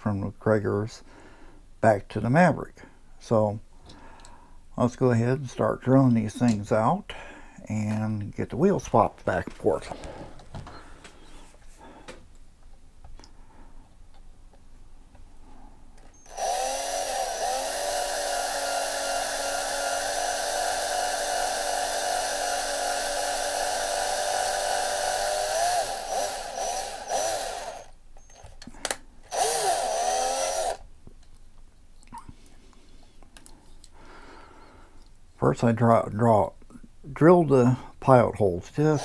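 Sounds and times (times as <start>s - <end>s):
small electric drill boring: 16.1s - 30.8s, 38.8s - 39.0s.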